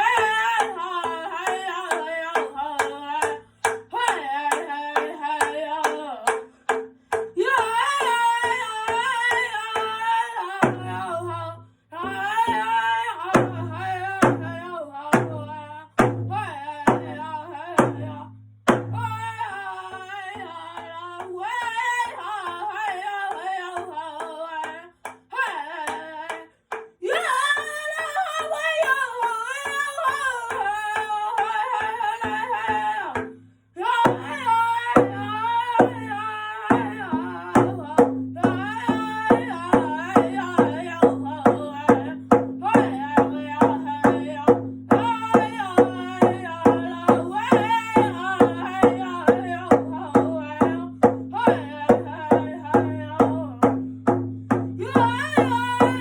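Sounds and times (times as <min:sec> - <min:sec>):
person singing: 0:00.0 - 0:06.5, 0:07.4 - 0:18.3, 0:18.9 - 0:53.8, 0:54.7 - 0:56.0
steady drum beat: 0:12.1 - 0:19.4, 0:31.8 - 0:56.0.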